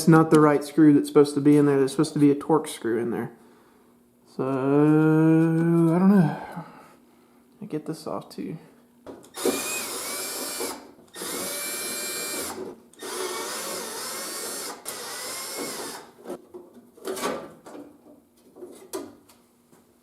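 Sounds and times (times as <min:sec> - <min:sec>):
cordless drill motor whine: 0:09.3 - 0:16.1.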